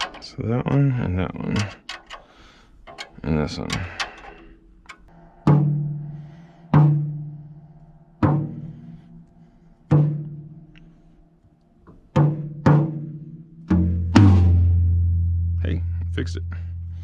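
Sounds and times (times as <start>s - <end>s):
lower-pitched drum struck: 5.1s - 10.7s, 12.2s - 17.0s
tom drum hits ringing: 5.4s - 7.3s, 8.2s - 8.9s.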